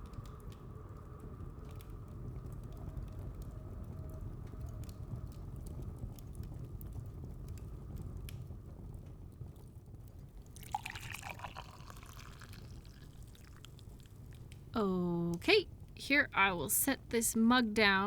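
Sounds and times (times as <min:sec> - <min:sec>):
tea pouring into a mug: 0:10.5 - 0:14.6.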